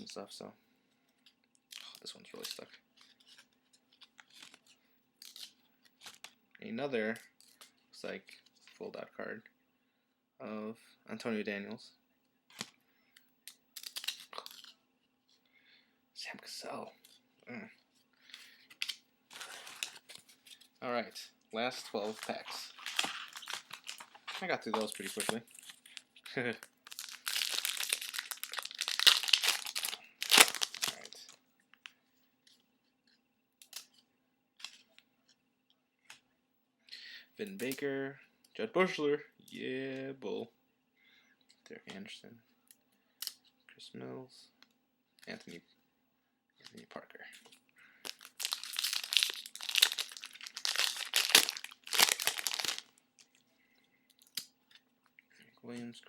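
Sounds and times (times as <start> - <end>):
card pack wrappers tearing and crinkling: 13.8 - 14.7, 18.8 - 20.2, 22.0 - 31.4, 48.0 - 53.3.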